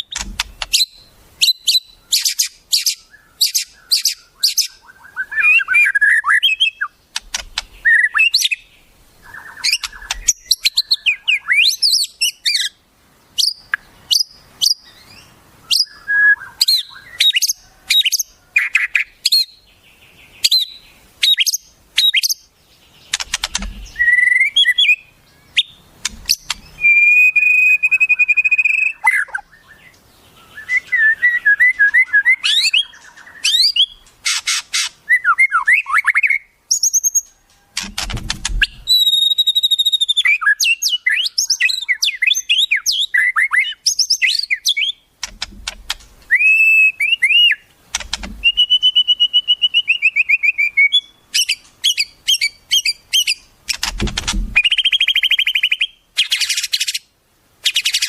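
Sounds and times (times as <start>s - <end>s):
bird trill: 0.0s - 12.8s, 13.4s - 45.4s, 46.2s - 57.1s, 57.7s - 58.0s
harsh noisy bird calls: 0.0s - 58.0s
songbirds chirping and whistling: 0.0s - 58.0s
bird warble: 7.1s - 8.5s, 9.2s - 11.0s, 23.0s - 24.3s, 26.0s - 27.0s, 37.6s - 39.8s, 47.9s - 48.8s, 53.2s - 55.5s.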